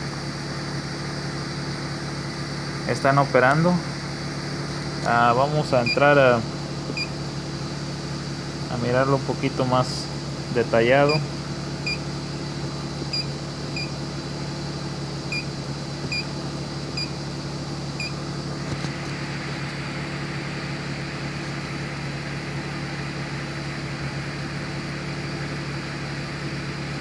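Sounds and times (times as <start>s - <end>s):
car engine idling: 0.0s - 27.0s
short electronic beeps: 5.8s - 6.0s, 7.0s - 7.2s, 11.1s - 12.0s, 13.1s - 14.0s.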